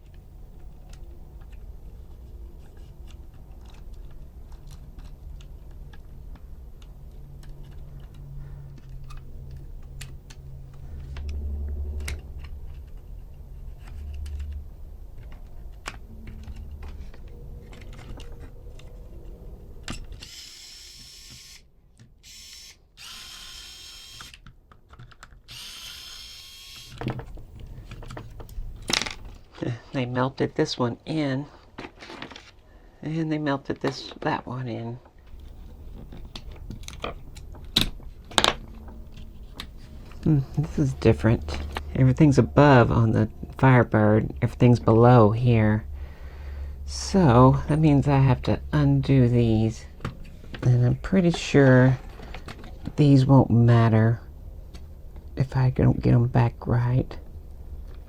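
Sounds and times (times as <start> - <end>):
low hum: 0.0 - 20.4, 35.1 - 58.0.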